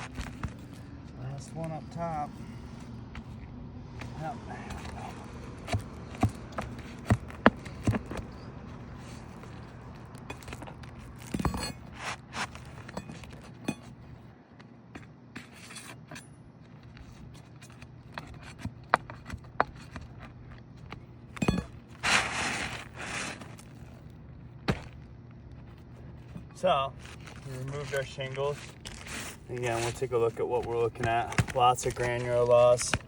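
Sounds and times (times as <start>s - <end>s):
shingles scraping rustle: 0.0s - 3.4s, 4.0s - 14.2s, 21.5s - 33.0s.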